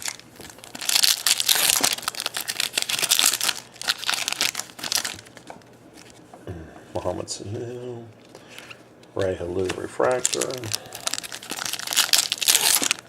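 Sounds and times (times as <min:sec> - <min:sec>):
foil wrapper tearing and crinkling: 0:00.0 - 0:05.5, 0:10.0 - 0:13.0.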